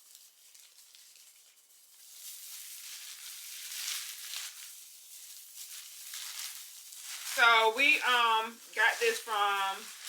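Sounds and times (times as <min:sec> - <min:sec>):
plastic bag crinkling: 0:00.0 - 0:10.0.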